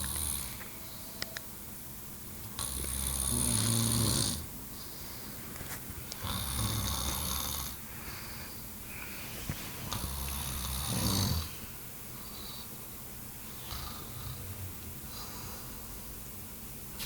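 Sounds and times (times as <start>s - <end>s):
person snoring: 0.0s - 0.6s, 2.6s - 4.5s, 6.2s - 7.8s, 9.9s - 11.6s, 13.6s - 16.0s.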